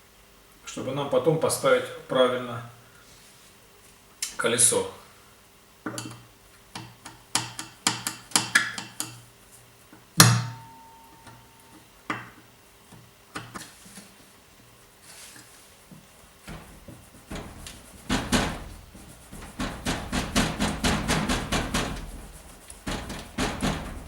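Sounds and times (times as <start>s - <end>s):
loud metallic clank: 16.5s - 24.0s
metal tools tapping metal: 16.5s - 24.0s.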